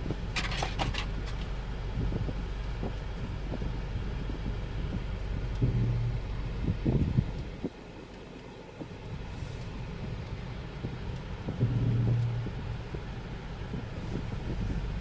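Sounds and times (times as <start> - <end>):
traffic engines rumbling: 0.0 - 15.0
engine revving louder: 5.6 - 7.0, 11.5 - 12.9.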